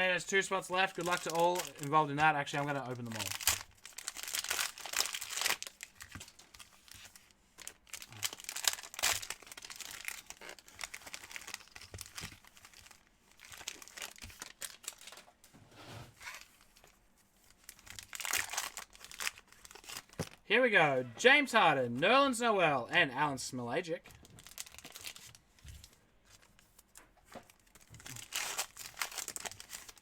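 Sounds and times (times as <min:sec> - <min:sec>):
cellophane wrappers tearing and crinkling: 0:00.6 - 0:15.2, 0:17.4 - 0:20.4, 0:24.2 - 0:26.6, 0:27.5 - 0:30.0.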